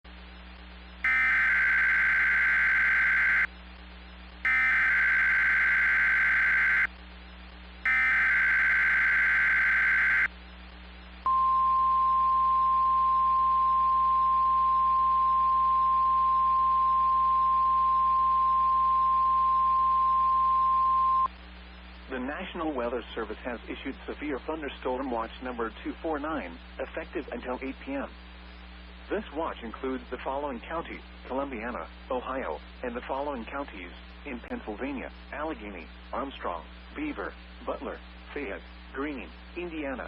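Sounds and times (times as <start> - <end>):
buzzing digital data bursts: 1.1 - 3.5, 4.5 - 6.9, 7.9 - 10.3
steady alert tone: 1.1 - 3.5, 4.5 - 6.9, 7.9 - 10.3.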